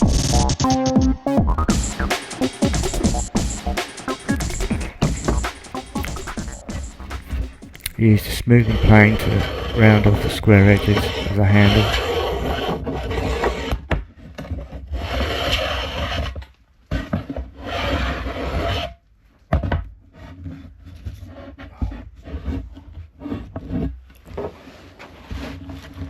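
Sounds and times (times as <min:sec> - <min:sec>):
plane shaving wood: 0:08.5 - 0:13.8, 0:14.8 - 0:16.4, 0:17.3 - 0:18.9.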